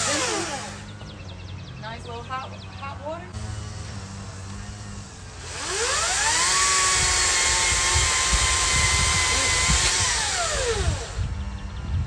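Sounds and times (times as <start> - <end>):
power tool motor whining: 0.0 - 1.2, 3.4 - 11.6.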